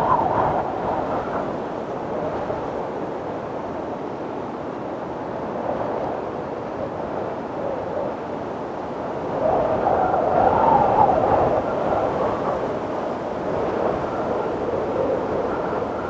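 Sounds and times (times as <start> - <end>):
wind blowing: 0.0 - 2.7.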